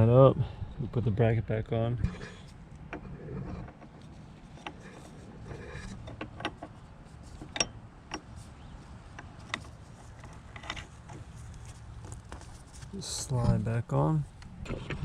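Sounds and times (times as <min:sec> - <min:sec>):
low steady hum: 0:00.0 - 0:15.0
metal parts and tools clicking: 0:02.2 - 0:08.5, 0:09.1 - 0:11.6.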